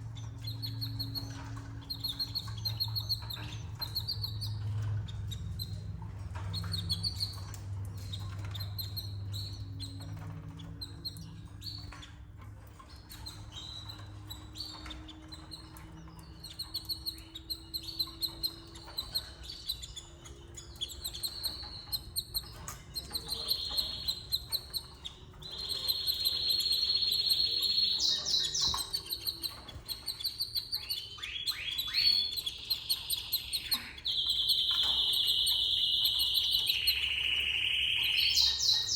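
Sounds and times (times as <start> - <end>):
canaries chirping and trilling: 0.0 - 38.9.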